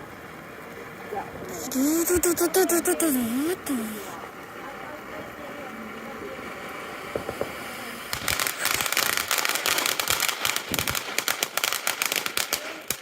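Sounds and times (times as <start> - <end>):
firework crackling pops: 5.9 - 13.0.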